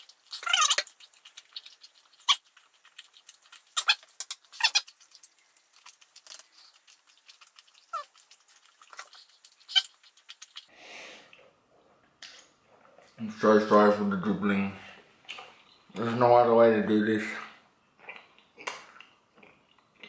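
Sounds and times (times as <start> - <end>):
wet chewing gum smacks: 0.0 - 10.7.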